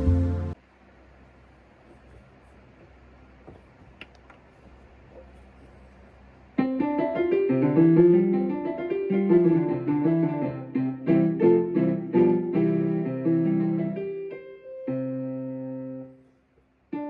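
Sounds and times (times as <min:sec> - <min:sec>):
piano music: 0:00.0 - 0:00.6, 0:06.6 - 0:16.1.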